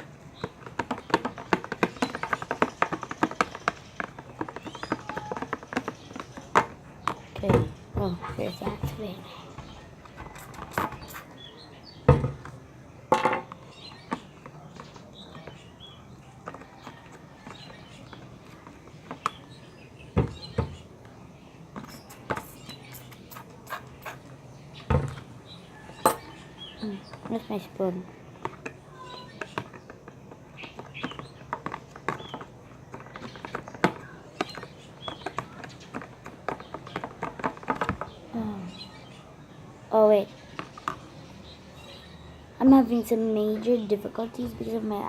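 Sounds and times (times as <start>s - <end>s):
objects knocking on a table: 12.0s - 14.9s, 24.9s - 25.2s.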